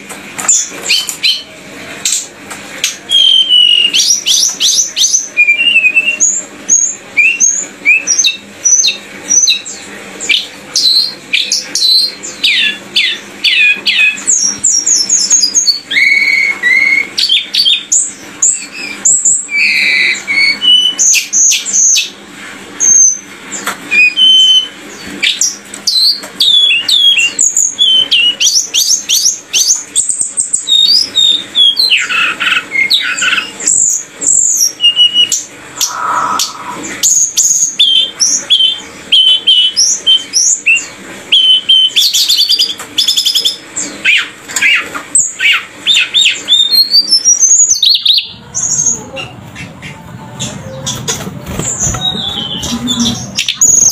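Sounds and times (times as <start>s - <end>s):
songbird chirping and whistling: 3.1s - 6.4s, 34.5s - 53.9s.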